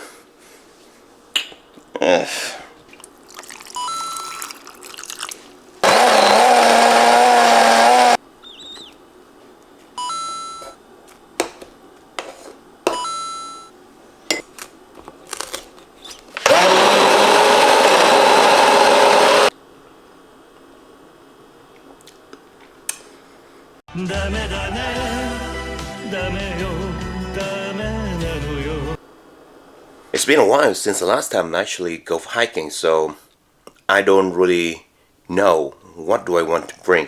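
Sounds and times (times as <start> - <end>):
blender clicks: 5.8 - 8.2, 16.4 - 19.5
blender running: 5.8 - 8.2, 16.4 - 19.5.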